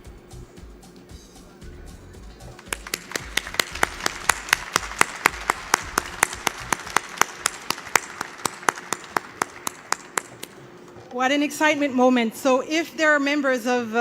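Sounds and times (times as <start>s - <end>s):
hands clapping sharply nearby: 2.4s - 11.0s
crowd applauding: 2.5s - 10.6s.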